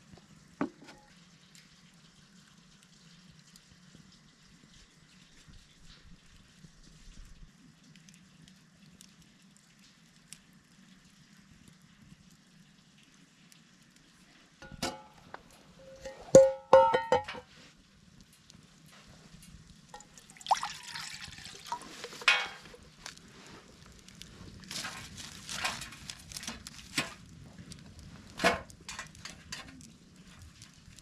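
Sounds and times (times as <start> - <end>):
tableware clinking: 14.6 - 15.2, 15.8 - 17.4
liquid pouring: 19.9 - 23.2.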